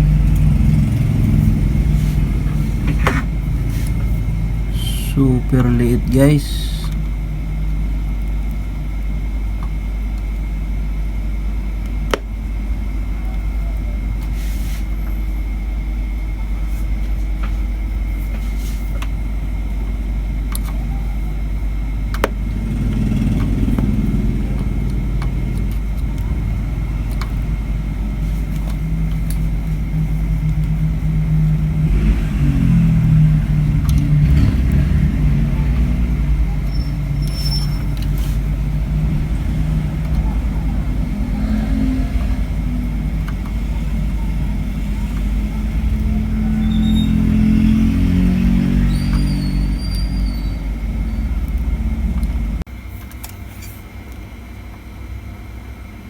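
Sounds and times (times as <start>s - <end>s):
deep hum and rumble: 0.0s - 6.1s, 21.8s - 47.1s, 48.3s - 52.7s.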